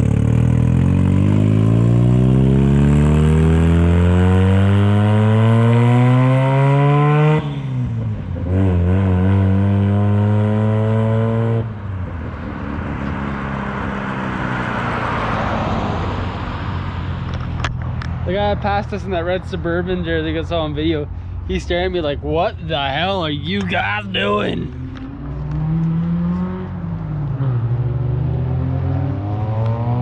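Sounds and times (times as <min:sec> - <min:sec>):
rotary engine accelerating: 0:00.0 - 0:07.4, 0:22.9 - 0:30.0
road noise: 0:00.0 - 0:30.0.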